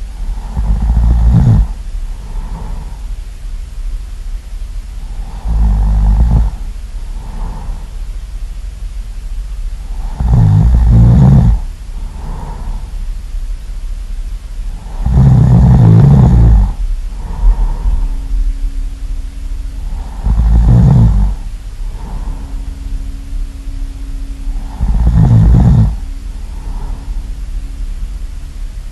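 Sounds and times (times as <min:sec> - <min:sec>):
soft breaths: 0:00.0 - 0:03.6, 0:04.3 - 0:28.9
loud snoring: 0:00.2 - 0:03.0, 0:05.0 - 0:07.9, 0:09.8 - 0:12.9, 0:14.7 - 0:18.3, 0:19.8 - 0:22.6, 0:24.5 - 0:27.2.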